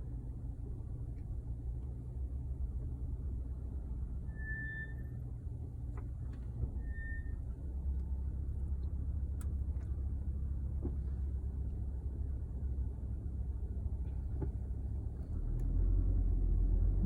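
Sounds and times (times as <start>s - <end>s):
car rolling low rumble: 0.0s - 17.0s
high-pitched brake squeal: 4.2s - 5.2s, 6.7s - 7.5s.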